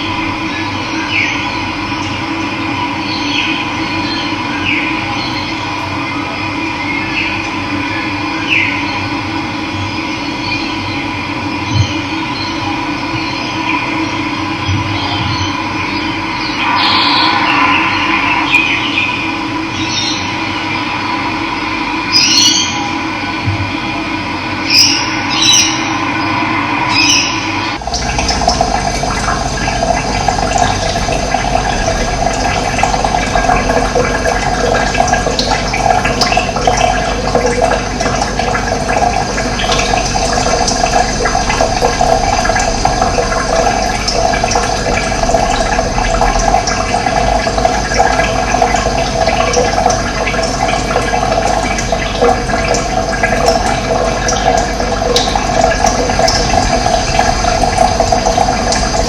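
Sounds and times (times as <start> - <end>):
running water splashing: 27.0 - 59.0.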